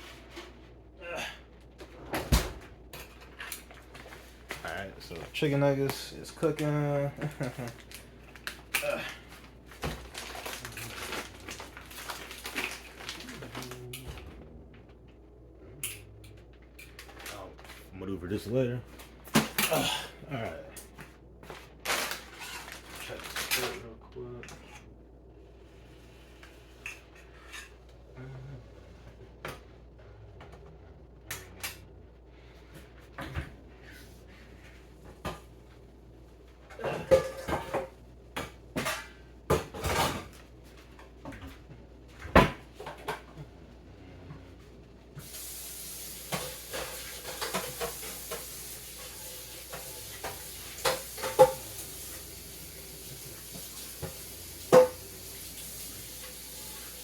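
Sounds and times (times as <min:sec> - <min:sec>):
pots and dishes clinking: 0:36.7 - 0:40.4, 0:46.2 - 0:52.3, 0:53.4 - 0:55.2
steady hiss: 0:45.2 - 0:57.0.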